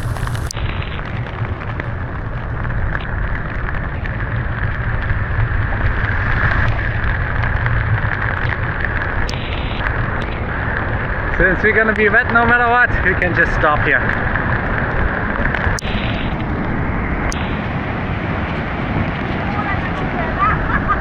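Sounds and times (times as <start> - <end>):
waterfall roaring: 0.0 - 3.2, 14.8 - 21.0
rain: 0.0 - 21.0.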